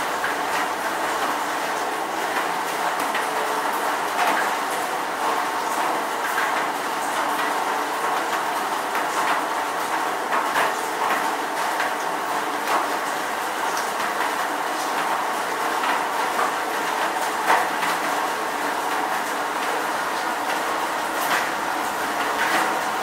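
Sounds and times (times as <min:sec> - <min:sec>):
raindrops tapping: 0:13.7 - 0:23.0.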